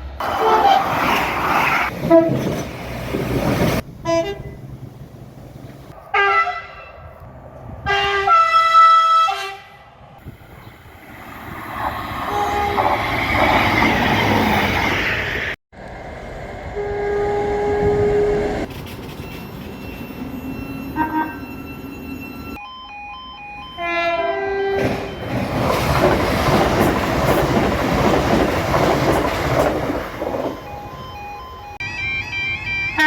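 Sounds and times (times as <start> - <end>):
passing train rumble: 0.0 - 22.6, 23.7 - 33.0
train horn chord: 12.3 - 12.9, 16.7 - 18.5, 23.8 - 25.0.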